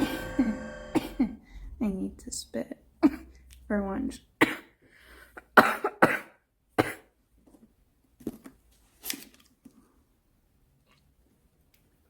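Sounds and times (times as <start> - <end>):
woman coughing: 4.4 - 4.7, 5.6 - 7.1.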